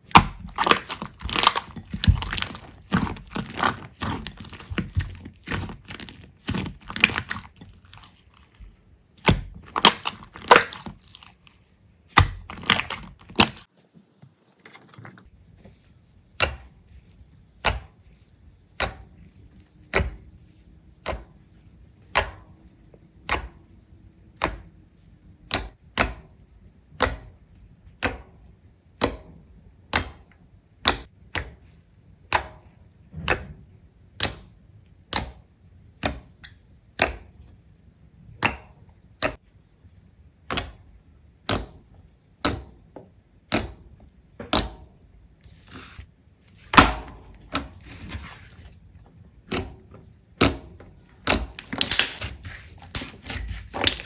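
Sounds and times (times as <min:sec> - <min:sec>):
slime crackling pops: 0:51.2 - 0:54.0.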